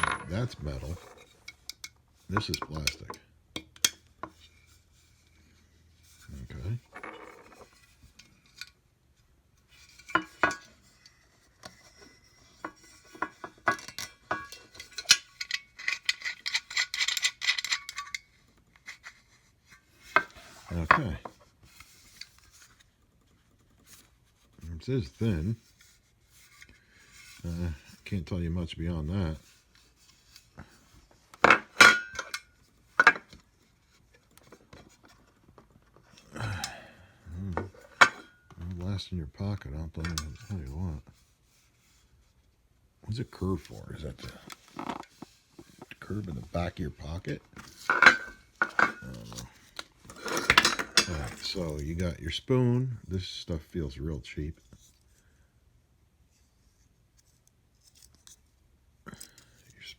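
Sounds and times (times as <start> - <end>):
metal pieces clinking and rattling: 0.0 - 1.9, 13.2 - 18.2.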